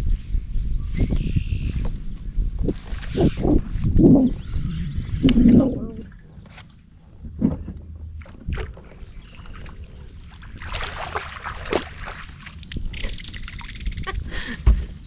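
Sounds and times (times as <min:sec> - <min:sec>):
water sloshing and dripping: 0:07.3 - 0:14.1.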